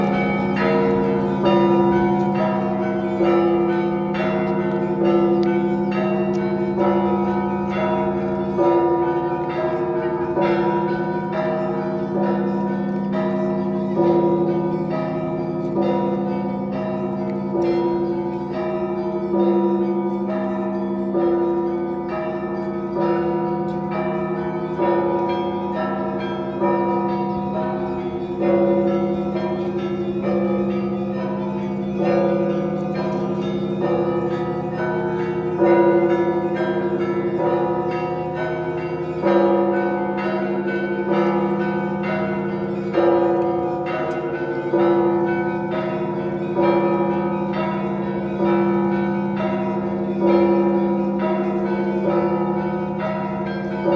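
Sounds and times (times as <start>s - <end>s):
heavy church bell: 0.0s - 53.9s.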